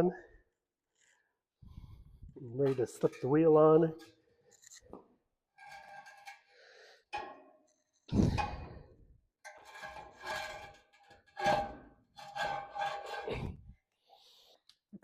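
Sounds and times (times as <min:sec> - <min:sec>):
metal scrapes and knocks: 0:02.5 - 0:04.8, 0:05.5 - 0:08.8, 0:09.4 - 0:13.6.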